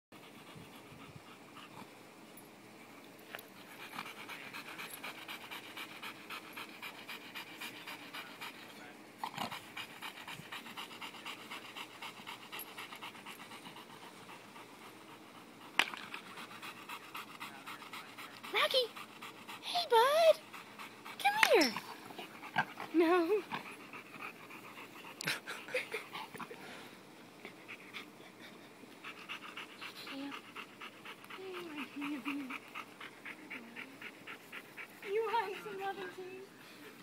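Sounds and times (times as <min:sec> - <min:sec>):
dog panting: 0:00.2 - 0:02.0, 0:03.4 - 0:37.0.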